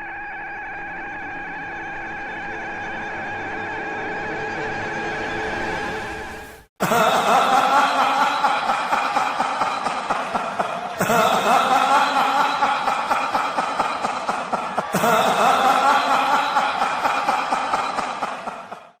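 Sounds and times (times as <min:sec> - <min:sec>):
sinister chuckling laugh: 0:06.8 - 0:19.0.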